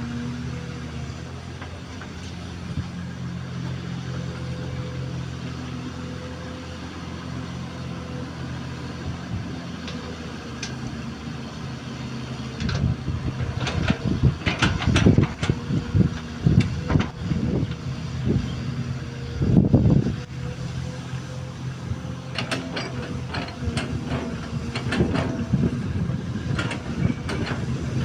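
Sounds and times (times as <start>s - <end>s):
excavator diesel engine running: 0.0s - 28.0s
metallic clanks and scrapes: 22.3s - 25.7s, 26.5s - 27.9s.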